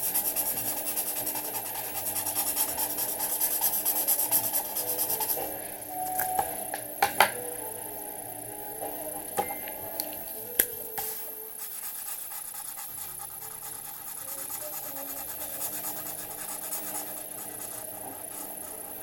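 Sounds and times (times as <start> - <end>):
drawing tip scratching paper: 0.0 - 5.6, 11.0 - 19.0.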